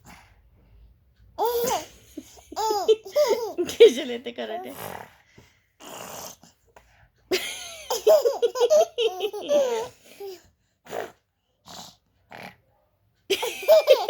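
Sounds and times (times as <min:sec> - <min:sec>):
baby laughing: 0:01.4 - 0:04.1, 0:07.4 - 0:10.4, 0:13.3 - 0:14.0.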